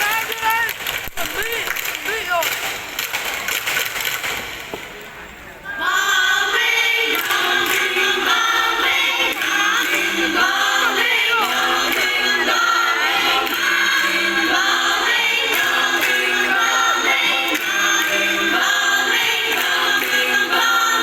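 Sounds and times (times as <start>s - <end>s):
choir singing: 5.7s - 21.0s.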